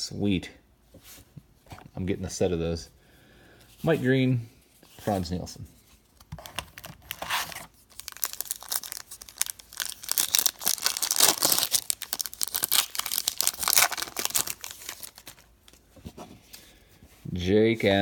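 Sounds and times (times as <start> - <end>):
card pack wrapper tearing and crinkling: 6.4 - 15.8.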